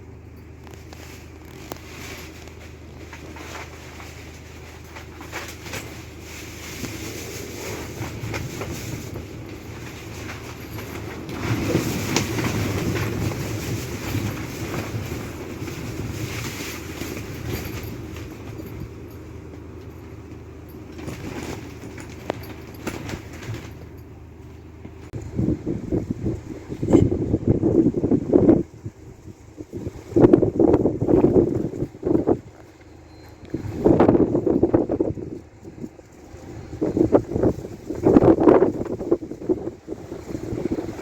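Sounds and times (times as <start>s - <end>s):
knocks and rattles: 0.6s - 25.2s
wind gusting: 25.0s - 32.6s, 33.5s - 41.0s.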